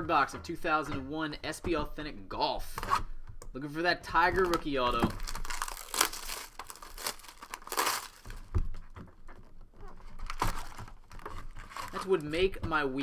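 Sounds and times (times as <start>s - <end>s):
wrapping crinkling and tearing: 4.4s - 9.0s, 9.7s - 12.3s.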